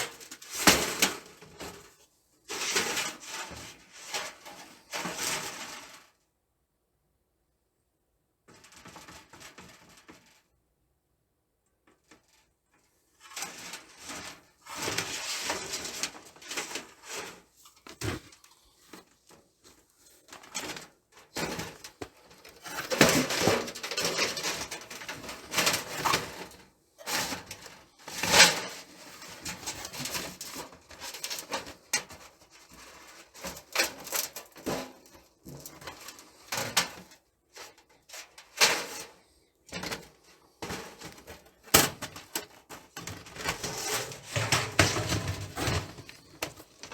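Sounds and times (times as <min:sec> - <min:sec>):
metal stove parts clattering: 0:37.7 - 0:46.9.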